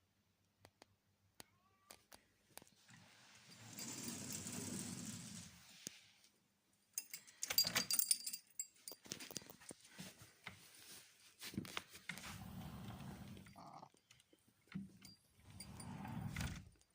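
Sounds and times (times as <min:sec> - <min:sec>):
metallic jangle with clicks: 0:06.9 - 0:09.7.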